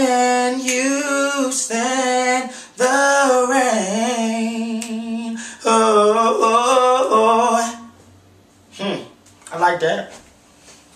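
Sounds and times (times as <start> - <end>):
person singing a cappella: 0.0 - 8.0.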